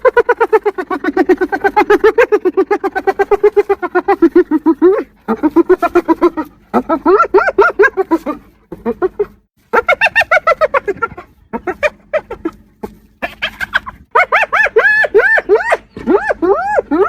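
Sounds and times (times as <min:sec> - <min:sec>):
hyena giggling: 0:00.0 - 0:17.0.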